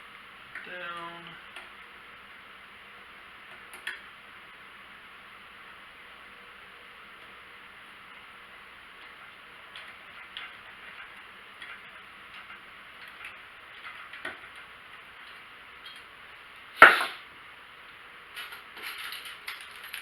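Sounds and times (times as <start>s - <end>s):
steady hiss: 0.0s - 20.0s
loud sharp clack: 16.8s - 17.2s.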